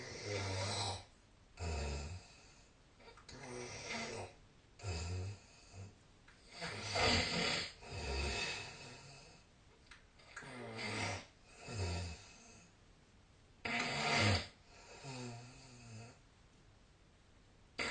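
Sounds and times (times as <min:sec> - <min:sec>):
person snoring: 0:00.0 - 0:05.9, 0:06.5 - 0:09.4, 0:10.2 - 0:12.7, 0:13.6 - 0:16.2.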